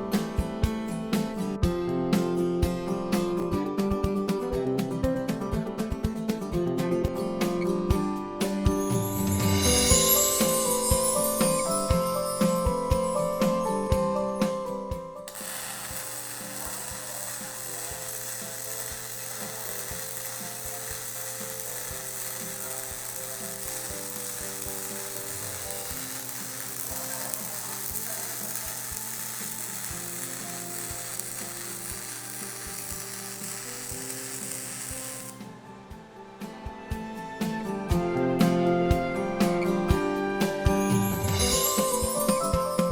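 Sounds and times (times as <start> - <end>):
welding arc crackling: 15.3 - 35.4.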